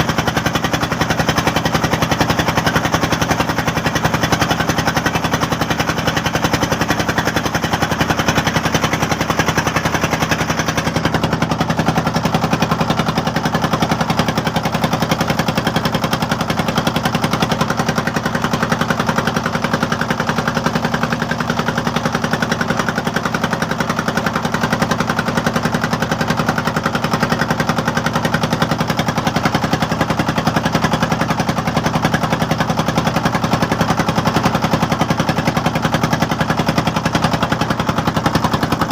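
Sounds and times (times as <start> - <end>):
boat engine chugging: 0.0 - 38.9.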